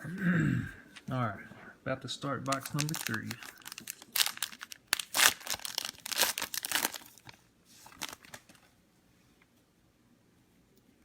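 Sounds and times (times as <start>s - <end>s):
plastic wrapping crinkling and tearing: 2.4s - 8.7s.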